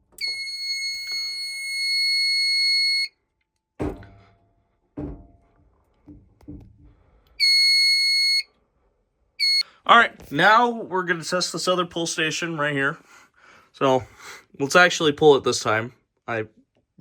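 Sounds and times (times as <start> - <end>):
fire alarm horn tone: 0.2 - 3.1, 7.4 - 8.4.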